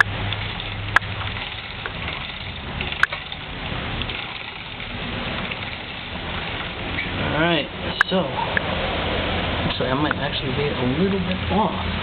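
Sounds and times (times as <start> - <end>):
sharp clicks: 0.0 - 1.1
heavy rain: 0.0 - 9.7.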